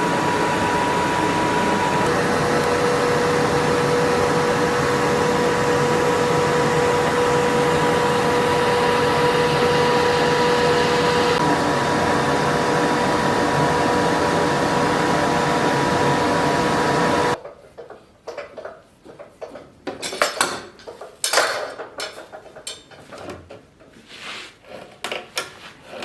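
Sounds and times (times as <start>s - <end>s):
machine running with rushing hum: 0.0s - 17.4s.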